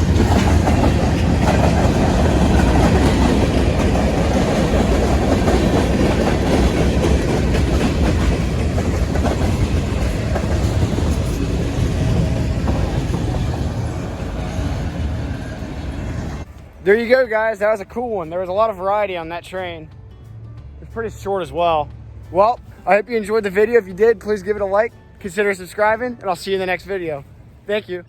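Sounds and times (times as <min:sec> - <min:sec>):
train wheels rolling on track: 0:00.0 - 0:18.7.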